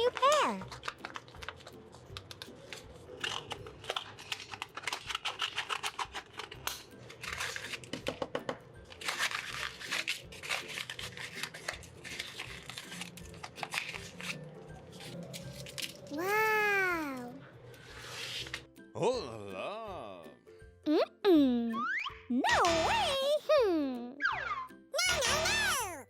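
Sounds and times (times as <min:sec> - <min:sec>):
paper crinkling and tearing: 0:00.1 - 0:08.0, 0:08.9 - 0:16.4.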